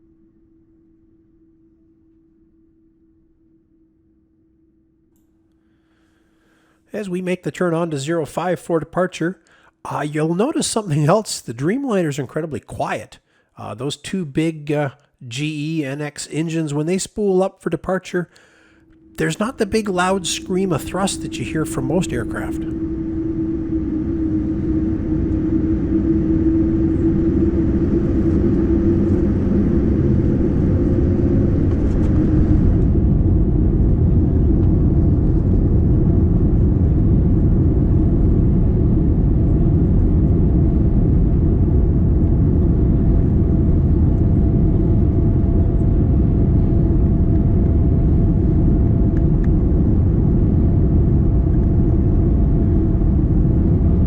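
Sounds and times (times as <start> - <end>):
jet engine rumble: 13.8 - 54.0
steady tone: 15.3 - 54.0.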